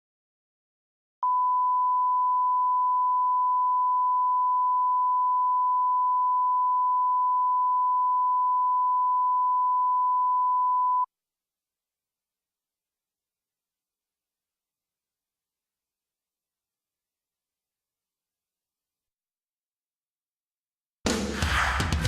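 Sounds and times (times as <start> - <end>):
electronic test tone beep: 1.2 - 11.1.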